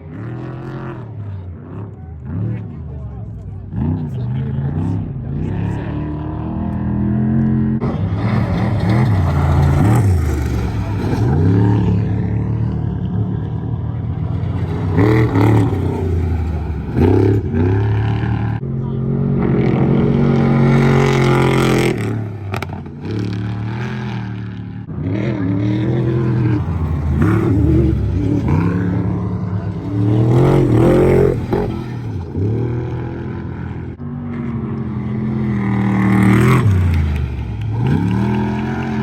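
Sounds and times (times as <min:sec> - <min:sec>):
race truck engines revving: 0:00.0 - 0:39.0.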